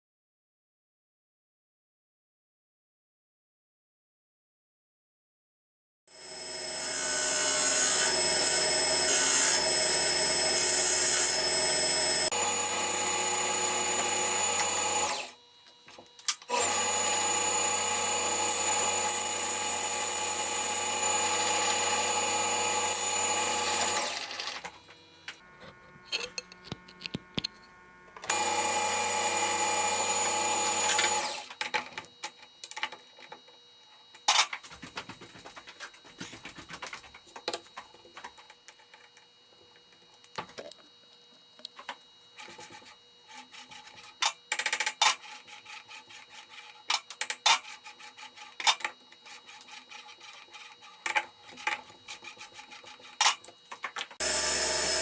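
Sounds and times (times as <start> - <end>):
welding arc buzzing: 22.0 - 31.5, 54.2 - 55.0.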